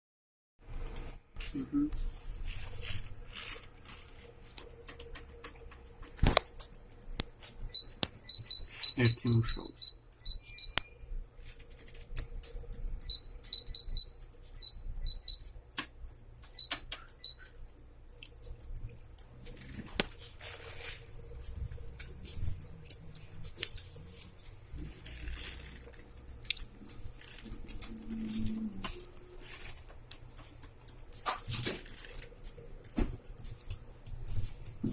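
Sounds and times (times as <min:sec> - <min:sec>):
keyboard keys clicking: 0:11.6 - 0:34.9.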